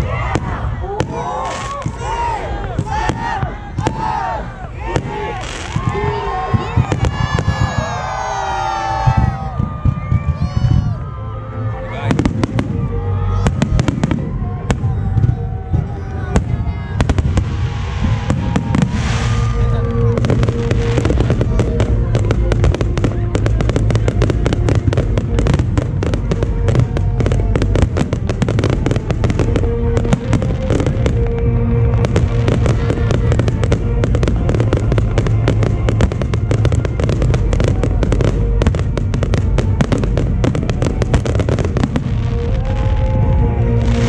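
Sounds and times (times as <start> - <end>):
fireworks crackling and banging: 0.0 - 11.2, 12.0 - 44.0
music: 0.0 - 44.0
rumble of firework bursts: 12.1 - 44.0.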